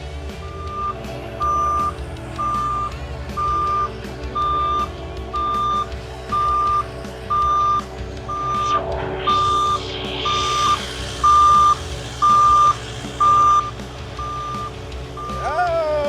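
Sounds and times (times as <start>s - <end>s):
diesel engine running: 0.0s - 16.0s
backup alarm beeping: 0.4s - 15.6s.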